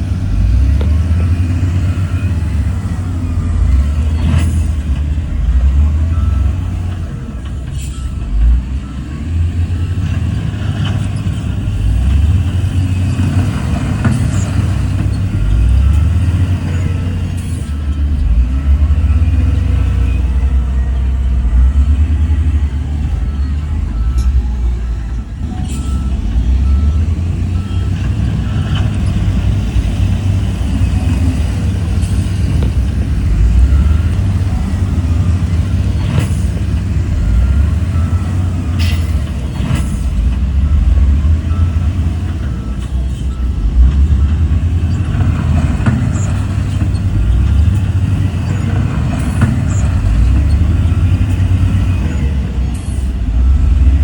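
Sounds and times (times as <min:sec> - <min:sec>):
heavy diesel machinery rumbling: 0:00.0 - 0:54.0
metallic clanks: 0:07.4 - 0:08.5, 0:25.4 - 0:26.8.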